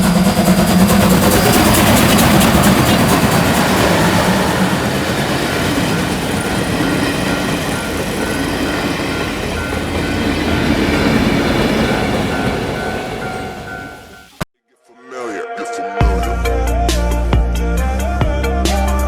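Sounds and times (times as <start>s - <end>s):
train rumbling and rattling: 0.0s - 14.4s
wheels clacking over rail joints: 0.0s - 14.4s.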